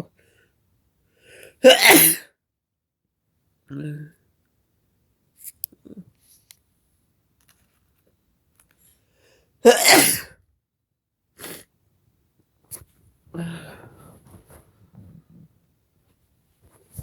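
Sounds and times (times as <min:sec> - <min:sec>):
person sneezing loudly: 0:01.6 - 0:02.3, 0:09.6 - 0:10.3.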